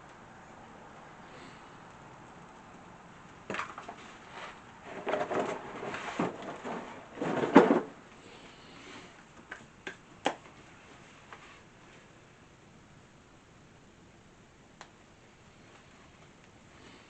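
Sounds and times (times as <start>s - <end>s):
irregular knocks and scrapes: 3.6s - 8.0s.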